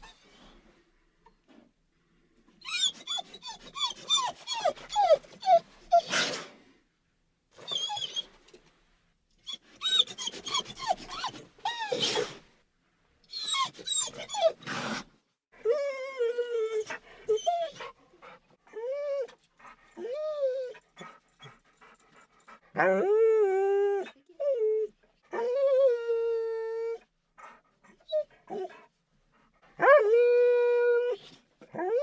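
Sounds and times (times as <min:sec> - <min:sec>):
dog whining and whimpering: 0:02.6 - 0:06.2, 0:07.6 - 0:08.3, 0:09.4 - 0:12.4, 0:13.3 - 0:14.9, 0:15.6 - 0:18.0, 0:18.7 - 0:21.5, 0:22.8 - 0:28.9, 0:29.8 - 0:32.0.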